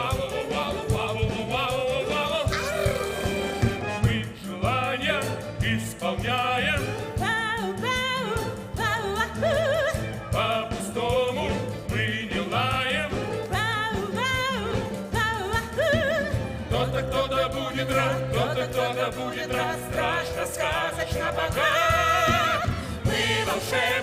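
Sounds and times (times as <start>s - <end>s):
people singing with vibrato: 0.0s - 24.0s.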